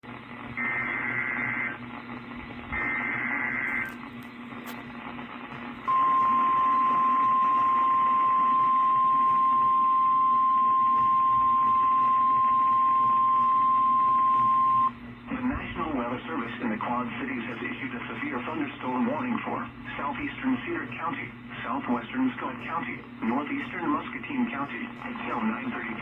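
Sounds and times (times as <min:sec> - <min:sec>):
static hiss: 0:00.1 - 0:05.9
single-pitch warning alarm tone: 0:05.9 - 0:15.0.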